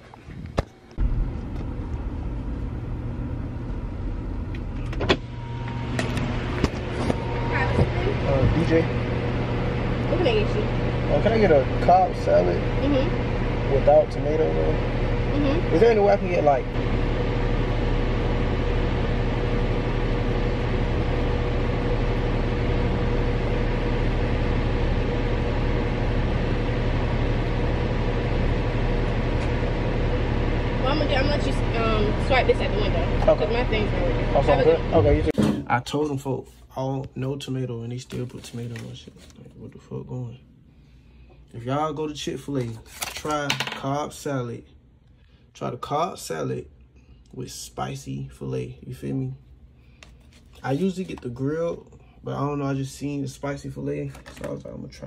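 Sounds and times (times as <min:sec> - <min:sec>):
car engine rumble inside cabin: 0:01.0 - 0:35.4.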